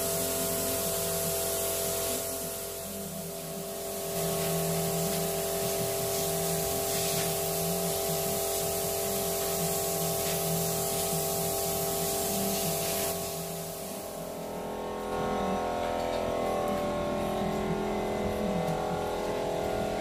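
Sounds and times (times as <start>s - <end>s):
spray gun hissing: 0.0s - 15.6s.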